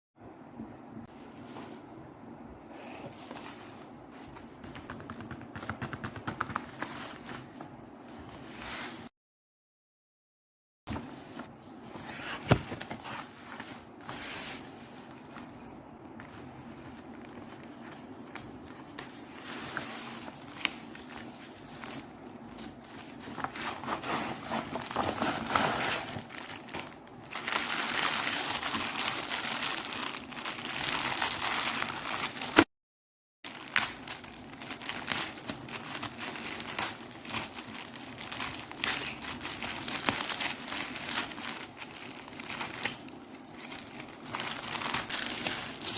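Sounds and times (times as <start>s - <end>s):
plastic packaging crinkling: 16.1s - 32.7s, 33.5s - 45.9s.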